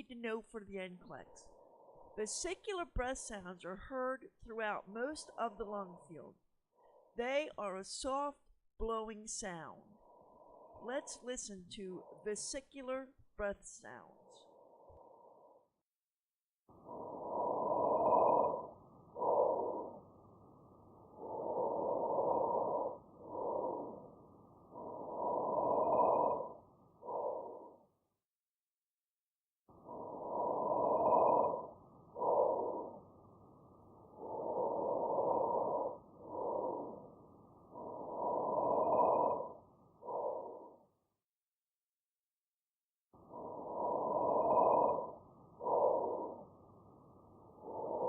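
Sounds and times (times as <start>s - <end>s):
soft breathing: 1.4s - 2.2s, 6.7s - 7.2s, 10.0s - 10.9s, 21.0s - 27.8s, 34.0s - 40.9s.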